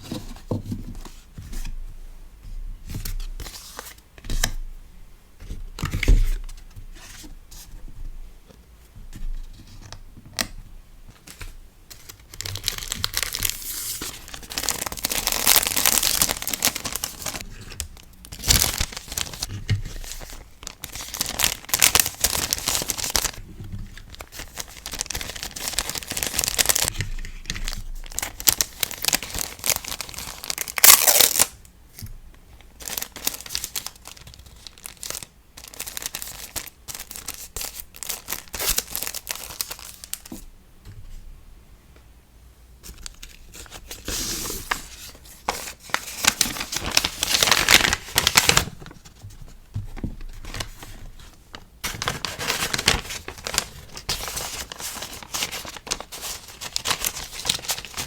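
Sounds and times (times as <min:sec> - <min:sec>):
packing materials crinkling: 0:11.2 - 0:26.9, 0:27.5 - 0:31.6, 0:32.8 - 0:40.3, 0:42.9 - 0:58.0.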